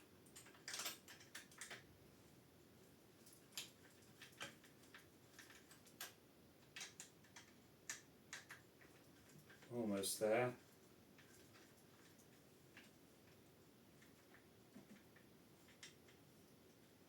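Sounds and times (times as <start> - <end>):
small plastic parts clicking: 0.2 - 1.9, 3.3 - 9.7.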